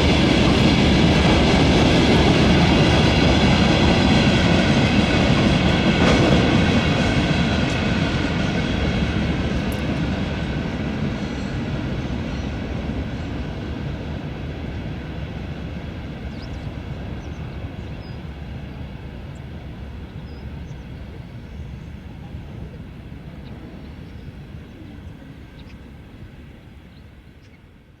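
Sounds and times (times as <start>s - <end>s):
high ringing of rails: 0.0s - 27.5s
freight train rumbling on rails: 0.0s - 28.0s.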